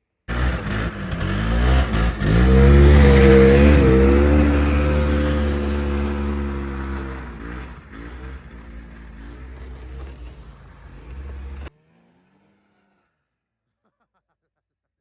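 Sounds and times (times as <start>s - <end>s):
snowmobile engine running: 0.3s - 12.2s.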